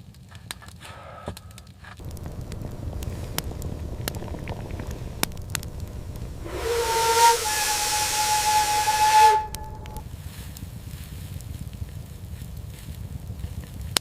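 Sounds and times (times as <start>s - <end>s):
faint crackling and clicks: 1.4s - 10.0s
loud hiss with whistling tone: 2.0s - 10.0s.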